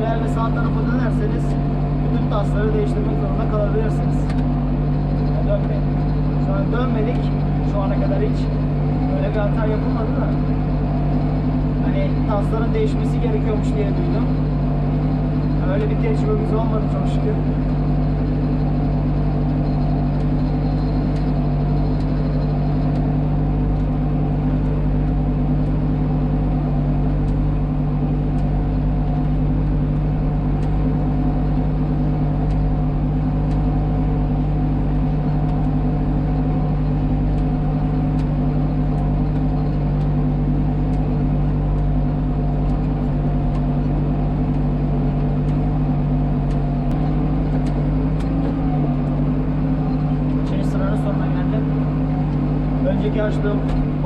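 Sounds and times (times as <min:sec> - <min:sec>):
tractor engine under load: 0:00.0 - 0:54.0.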